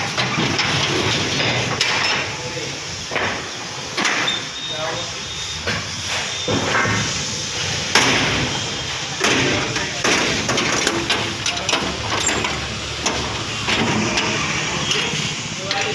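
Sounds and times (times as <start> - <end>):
machinery humming: 0.0 - 15.9
knocks and clatters: 9.2 - 15.2.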